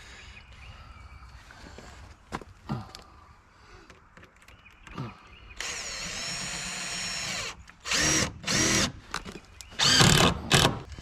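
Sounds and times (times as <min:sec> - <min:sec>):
power drill driving screws: 0:05.6 - 0:10.9.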